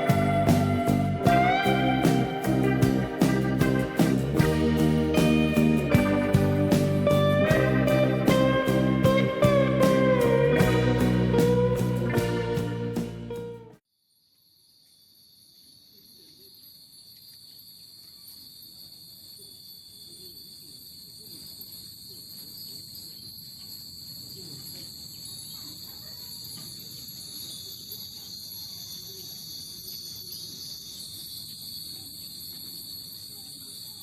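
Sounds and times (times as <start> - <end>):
background music: 0.0 - 13.7
crickets chirring: 14.3 - 34.0.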